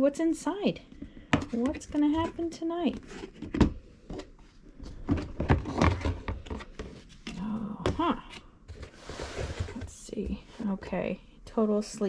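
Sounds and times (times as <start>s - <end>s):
cardboard box handled: 8.0s - 10.8s.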